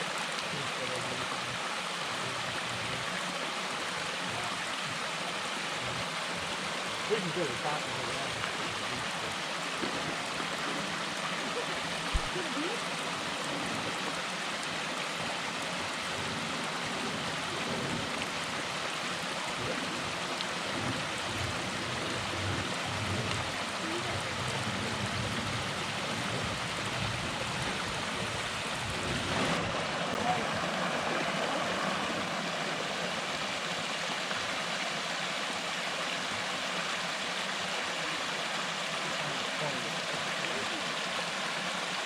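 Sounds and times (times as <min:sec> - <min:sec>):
small waterfall rushing: 0:00.0 - 0:42.0.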